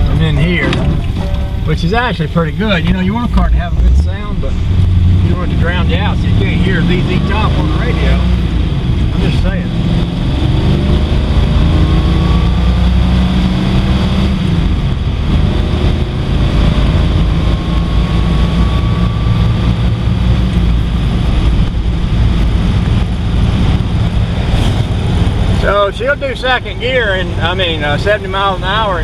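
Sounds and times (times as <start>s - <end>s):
car engine running: 0.0s - 29.0s
road and wind noise: 0.0s - 29.0s
faint rising whine: 15.9s - 22.3s.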